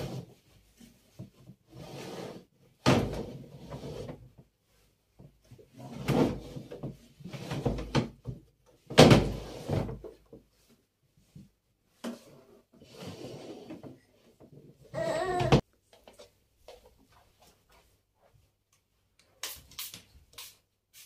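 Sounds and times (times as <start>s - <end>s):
soft shuffling and rustling: 15.8s - 19.1s.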